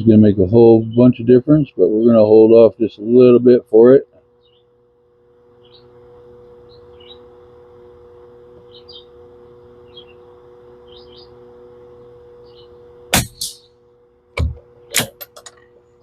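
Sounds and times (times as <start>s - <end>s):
low two-tone hum: 0.0s - 16.0s
songbird chirping: 4.3s - 4.8s, 5.5s - 6.0s, 6.6s - 7.4s, 8.6s - 9.2s, 9.8s - 11.4s, 12.4s - 12.8s.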